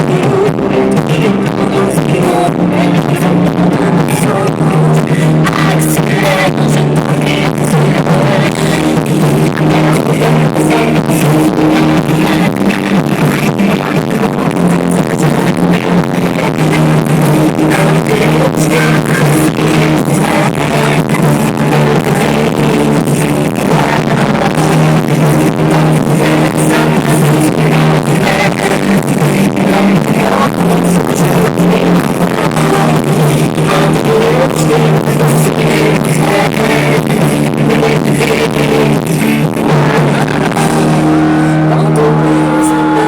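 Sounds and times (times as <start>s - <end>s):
live pop-rock band music: 0.0s - 43.0s.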